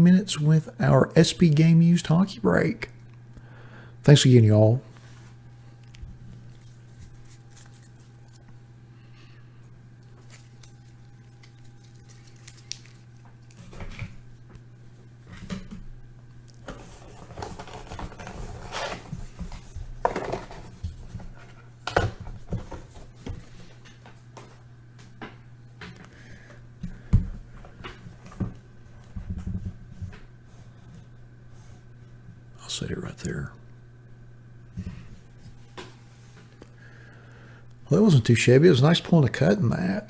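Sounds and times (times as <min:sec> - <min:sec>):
low electrical hum: 0:00.0 - 0:40.0
cards rustling: 0:05.0 - 0:09.3, 0:09.9 - 0:14.4.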